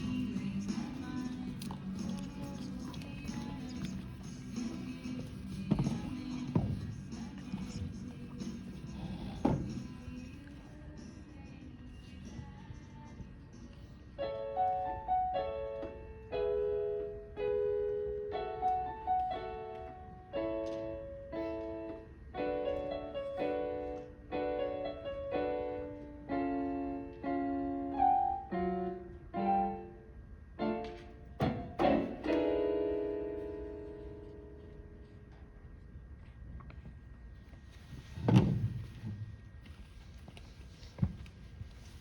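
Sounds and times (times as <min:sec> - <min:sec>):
piano chords: 0:14.2 - 0:35.3.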